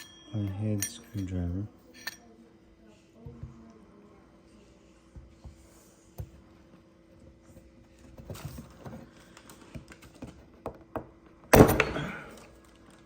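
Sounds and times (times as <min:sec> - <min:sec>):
loud metallic clank with rattle: 0:11.6 - 0:12.3.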